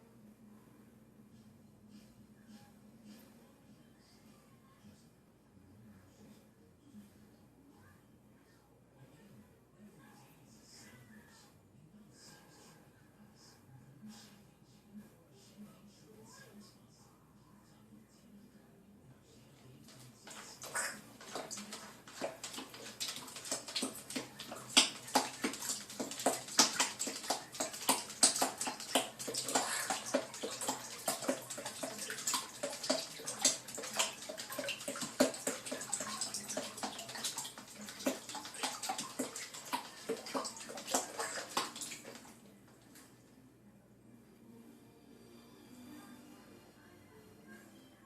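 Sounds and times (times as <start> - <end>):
bath water splashing: 19.8 - 42.4.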